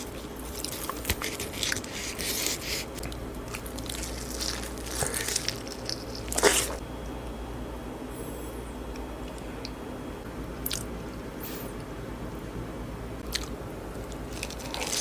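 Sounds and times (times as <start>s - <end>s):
person chewing crunchy food: 0.0s - 6.8s, 13.2s - 15.0s.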